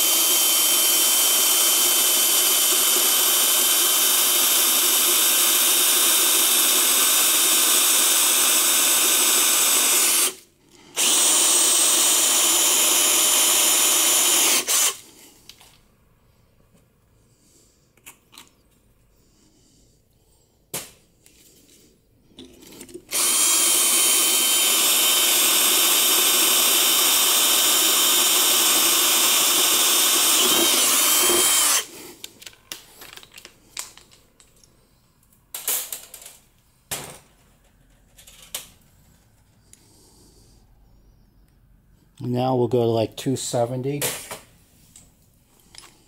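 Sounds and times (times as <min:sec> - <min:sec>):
power drill drilling metal: 0:00.0 - 0:10.4, 0:11.0 - 0:15.0, 0:23.1 - 0:32.0.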